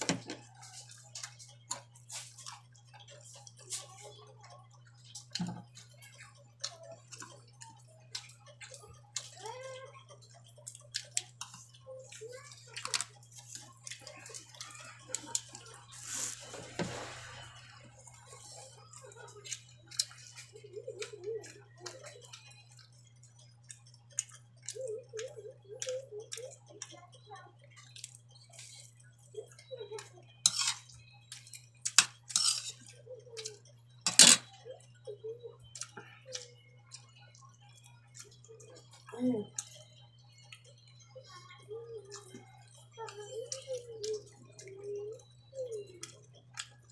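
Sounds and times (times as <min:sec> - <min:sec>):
utensils clinking on a plate: 0:30.4 - 0:34.6.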